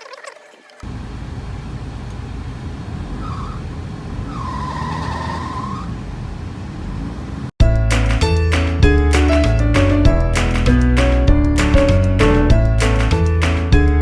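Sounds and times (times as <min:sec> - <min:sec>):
engine low rumble: 0:00.8 - 0:07.6
high squeal: 0:03.0 - 0:06.2.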